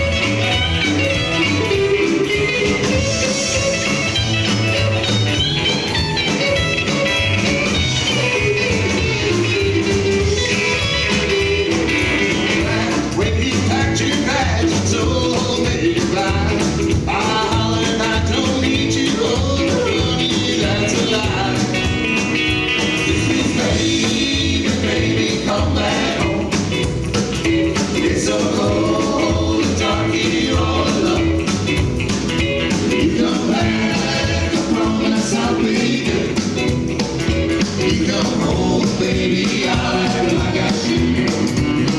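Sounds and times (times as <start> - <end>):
electric guitar: 0.0 - 41.9
rockabilly band playing live: 0.0 - 41.9
person singing: 12.0 - 21.9, 23.0 - 26.8, 27.6 - 31.6, 32.9 - 36.6, 37.8 - 41.5.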